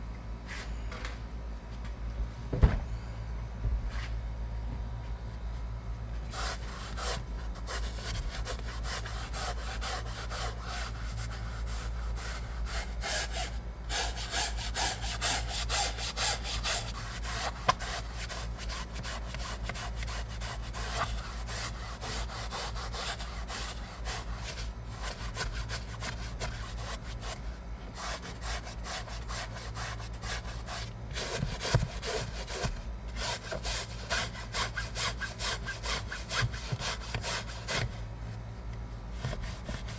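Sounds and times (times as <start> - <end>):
steady low hum: 0.0 - 39.9
brush scrubbing fabric seat: 6.3 - 38.0.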